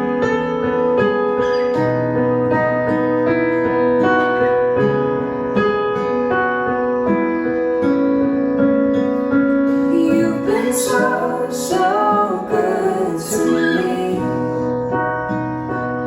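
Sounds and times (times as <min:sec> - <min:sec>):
piano playing held chords: 0:00.0 - 0:16.0
woman singing: 0:09.7 - 0:14.9.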